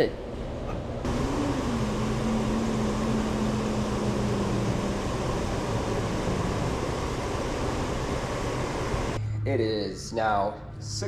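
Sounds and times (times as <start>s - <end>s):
machine rushing noise: 1.0s - 9.2s
faint tone: 1.1s - 7.7s.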